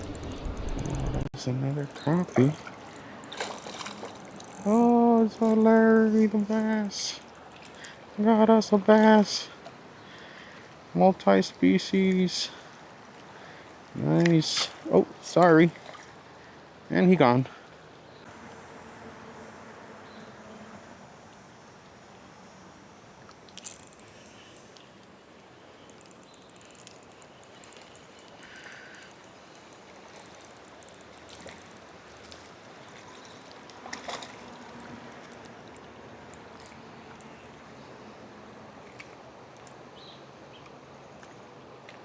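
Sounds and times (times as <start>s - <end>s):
sharp clicks and knocks: 0.0s - 7.9s, 23.6s - 24.8s, 25.9s - 32.2s
fast faint ticking: 0.0s - 8.1s, 23.6s - 24.8s, 25.8s - 32.4s
river water flowing: 0.0s - 11.0s, 23.4s - 40.5s.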